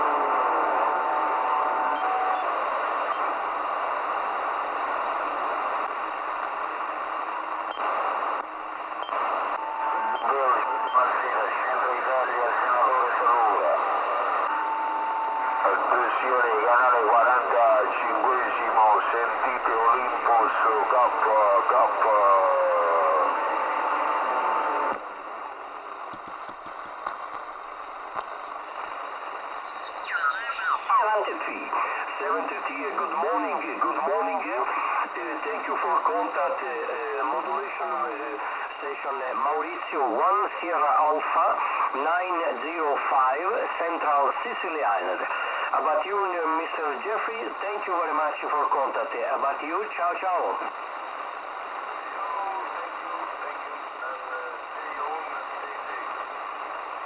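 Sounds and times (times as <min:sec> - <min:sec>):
steady radio tone: 0:00.0 - 0:06.3, 0:09.0 - 0:26.0, 0:26.6 - 0:57.0
radio static hiss: 0:00.0 - 0:26.1, 0:27.0 - 0:57.0
radio whistle: 0:01.2 - 0:03.4, 0:29.6 - 0:31.2
radio clicks: 0:24.9 - 0:28.8.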